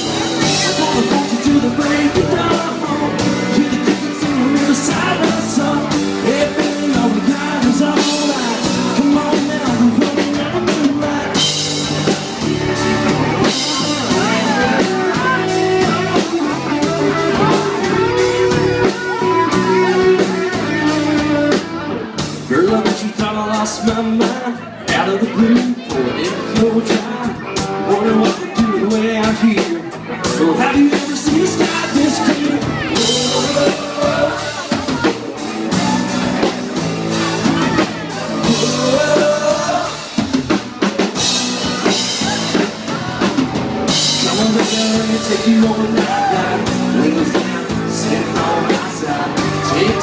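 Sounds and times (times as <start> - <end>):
lead guitar bending notes: 0.0 - 22.3
band with drum beats: 0.0 - 50.0
country-rock music: 0.0 - 50.0
person singing: 0.0 - 50.0.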